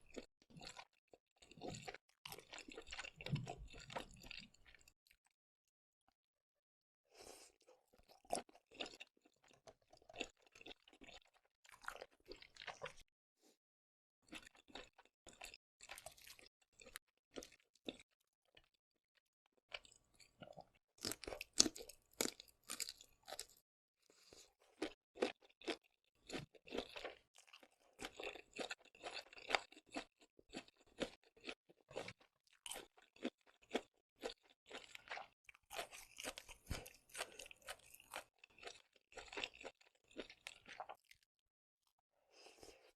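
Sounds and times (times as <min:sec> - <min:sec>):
wet crunchy chewing: 0:19.7 - 0:23.6, 0:24.2 - 0:41.2.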